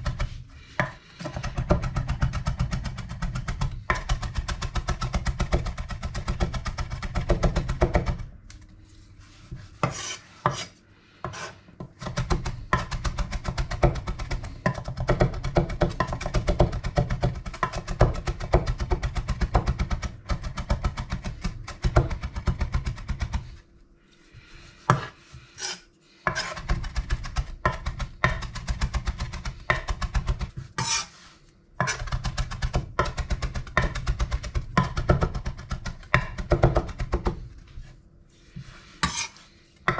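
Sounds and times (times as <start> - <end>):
knife chopping on cutting board: 0.0 - 8.2, 9.7 - 23.4, 24.9 - 31.1, 31.8 - 37.5, 39.0 - 39.3.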